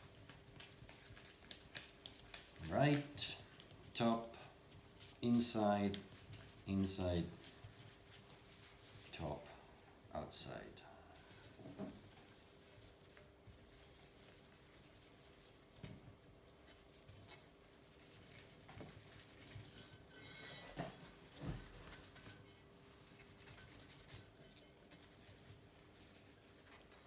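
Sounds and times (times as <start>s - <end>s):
cloth rubbing on paint: 0.0s - 20.0s.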